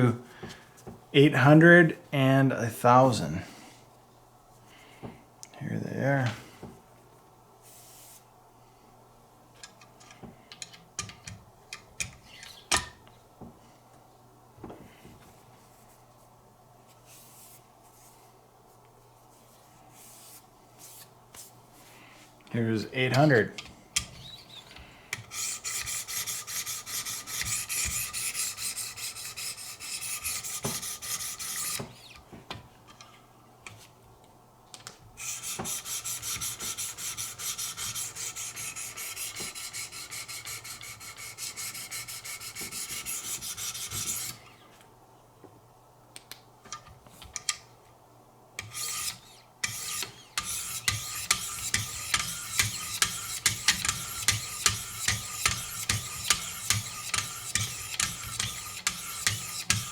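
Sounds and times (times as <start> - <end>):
sharpening stone scraping knife: 48.6 - 59.9.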